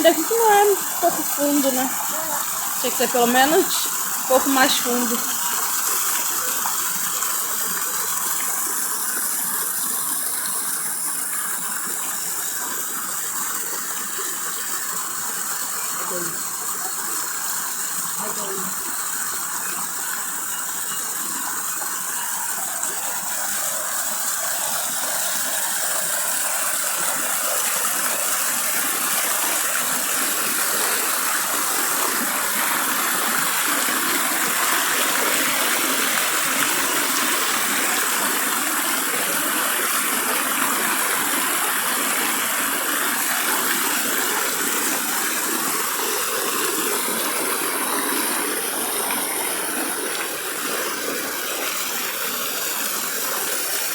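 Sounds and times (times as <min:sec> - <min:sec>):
waterfall rushing and splashing: 0:00.0 - 0:53.9.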